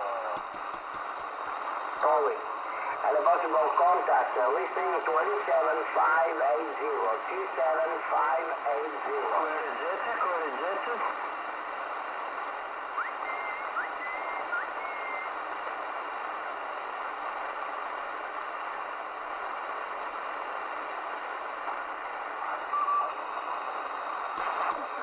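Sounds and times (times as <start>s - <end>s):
radio static: 1.4s - 15.7s, 18.8s - 25.0s
whistling tones: 13.0s - 15.3s, 22.7s - 23.2s
brief tone: 22.6s - 23.2s.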